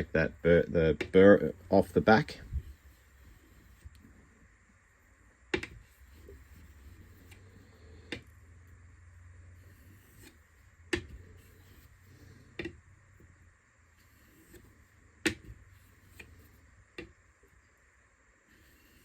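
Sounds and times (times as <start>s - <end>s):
chisel strokes on wet whetstone: 0.1s - 4.5s, 5.8s - 8.4s, 9.5s - 12.8s, 13.9s - 17.8s, 18.4s - 19.0s.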